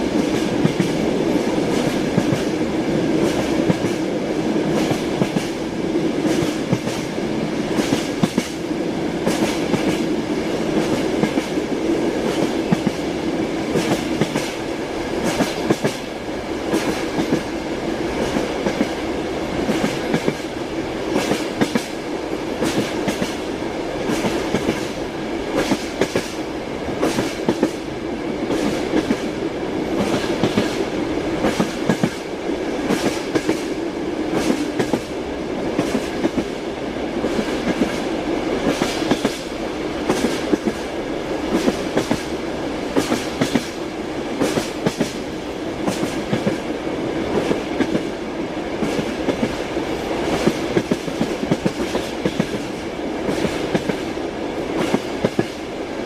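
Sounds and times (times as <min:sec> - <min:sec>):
train rumble: 0:00.0 - 0:56.0
train wheels clattering over rail joints: 0:30.0 - 0:30.8, 0:38.6 - 0:40.9, 0:42.9 - 0:43.8, 0:50.2 - 0:54.0.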